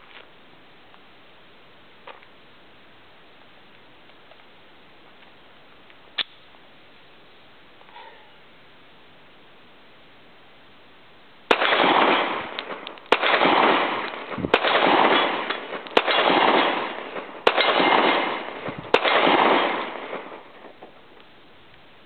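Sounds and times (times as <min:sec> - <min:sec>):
gunshot echo: 0:11.5 - 0:20.8
pistol shots: 0:11.5 - 0:20.9.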